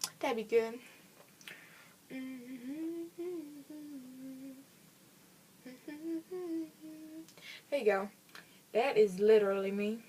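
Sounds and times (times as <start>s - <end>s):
woman humming: 2.1s - 4.6s, 5.6s - 7.3s.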